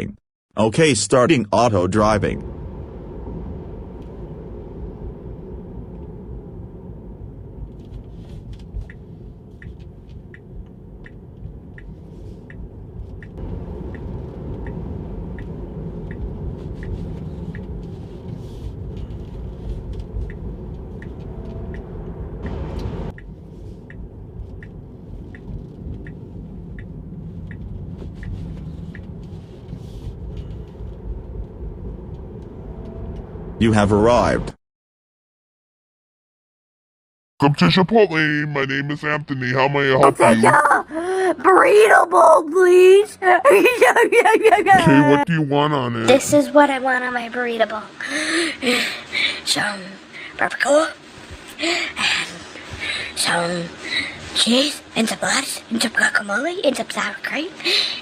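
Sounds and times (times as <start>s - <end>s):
road and tyre rumble: 1.8s - 34.6s
light regular ticking: 7.6s - 33.3s.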